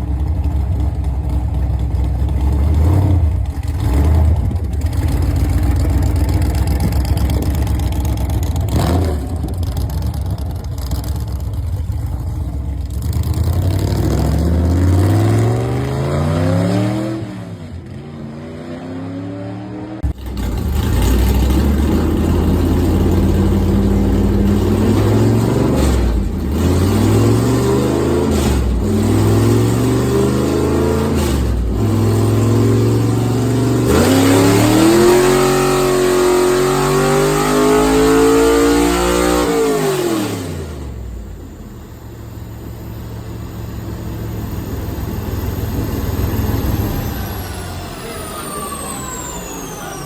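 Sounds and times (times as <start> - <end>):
quieter engine sound: 0.0 - 18.3, 19.1 - 35.7, 40.4 - 50.0
car engine accelerating hard: 0.0 - 50.0.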